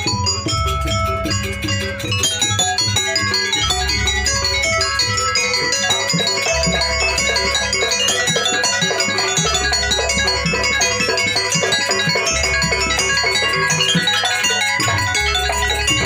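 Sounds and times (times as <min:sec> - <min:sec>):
gamelan tuned percussion: 0:00.0 - 0:16.0.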